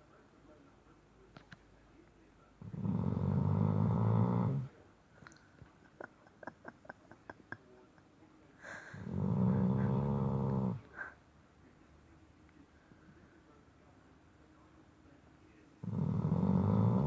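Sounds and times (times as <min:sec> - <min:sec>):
dog snoring loudly: 0:02.6 - 0:04.7, 0:09.0 - 0:10.8, 0:15.8 - 0:17.0.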